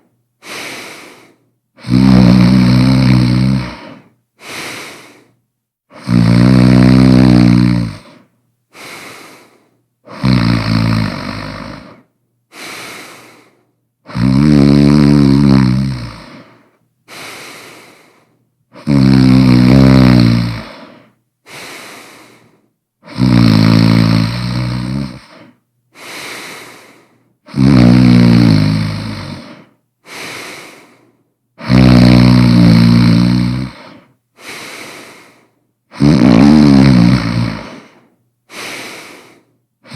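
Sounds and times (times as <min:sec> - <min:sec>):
quiet breath: 0:00.0 - 0:01.9, 0:03.6 - 0:06.2, 0:07.8 - 0:10.2, 0:11.4 - 0:14.2, 0:16.1 - 0:18.9, 0:20.6 - 0:23.2, 0:24.6 - 0:27.6, 0:29.2 - 0:31.7, 0:33.3 - 0:36.0, 0:37.5 - 0:39.9
person snoring loudly: 0:00.4 - 0:05.3, 0:05.9 - 0:08.2, 0:10.1 - 0:12.0, 0:14.0 - 0:18.1, 0:18.7 - 0:31.0, 0:31.6 - 0:39.9.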